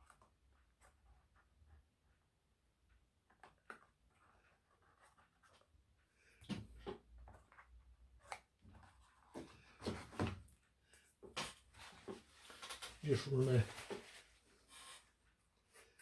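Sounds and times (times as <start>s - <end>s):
paper and card rustling: 11.8s - 15.0s.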